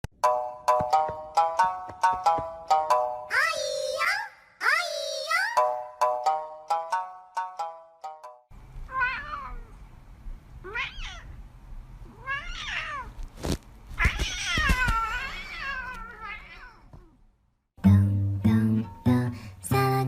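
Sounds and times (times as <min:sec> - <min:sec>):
cat meowing: 0:08.9 - 0:09.8, 0:10.6 - 0:11.4, 0:12.0 - 0:13.2, 0:14.0 - 0:17.2.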